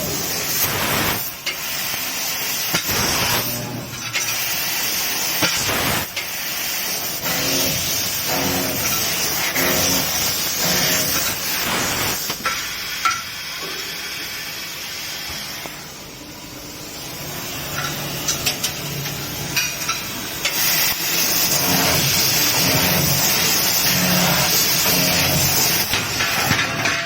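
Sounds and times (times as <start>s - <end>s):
laser cutting head hissing: 0.0s - 3.6s, 4.2s - 12.4s.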